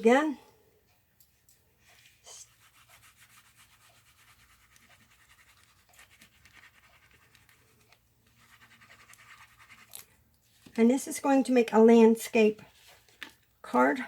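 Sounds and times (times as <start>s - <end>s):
paper rubbing and tapping: 2.4s - 10.8s, 12.6s - 13.5s.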